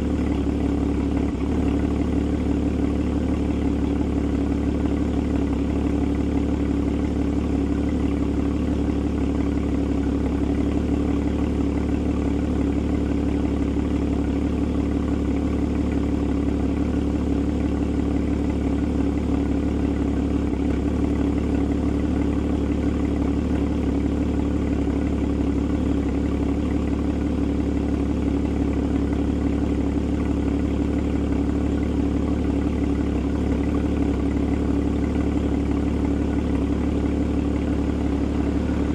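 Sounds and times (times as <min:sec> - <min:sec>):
car engine idling: 0:00.0 - 0:38.9.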